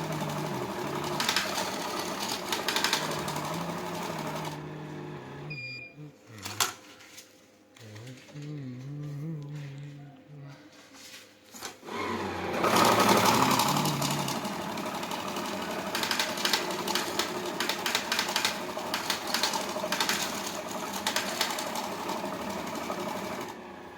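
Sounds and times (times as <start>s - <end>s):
banknote sorting machine clattering: 0.0s - 4.6s, 12.5s - 23.5s.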